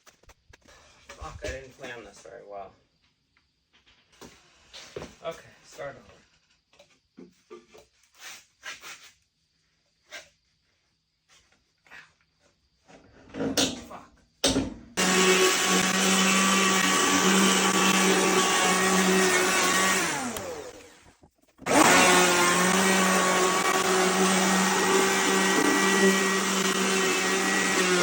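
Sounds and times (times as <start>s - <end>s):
electric power tool running: 15.0s - 28.0s.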